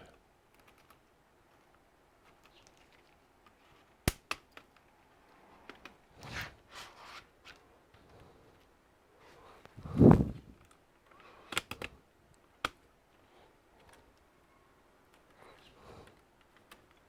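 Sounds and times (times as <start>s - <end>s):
sharp clicks: 10.6s - 12.9s.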